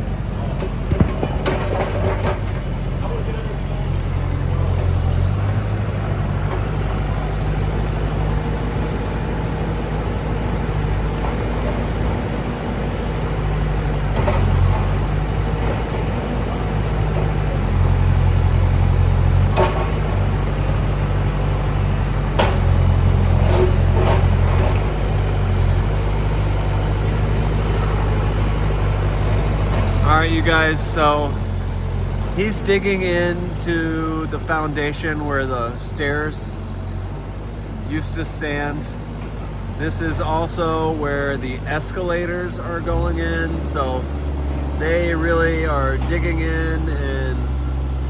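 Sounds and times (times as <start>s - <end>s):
excavator diesel engine: 0.0s - 48.0s.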